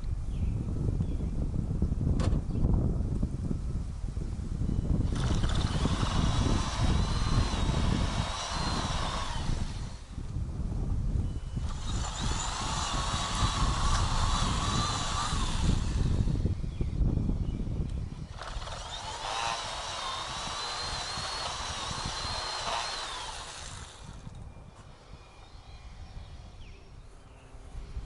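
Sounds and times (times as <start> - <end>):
steady low rumble: 0.0 - 18.2
string trimmer motor whining: 5.0 - 10.4, 11.3 - 17.0, 17.8 - 27.3.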